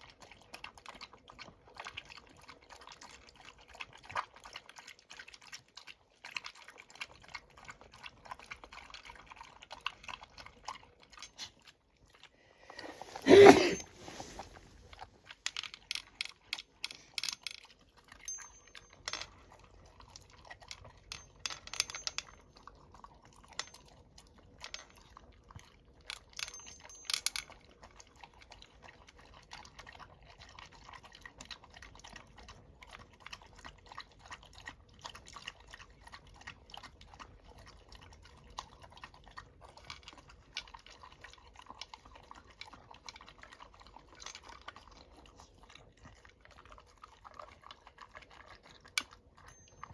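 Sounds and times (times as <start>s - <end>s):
dog crunching food: 35.0s - 49.9s.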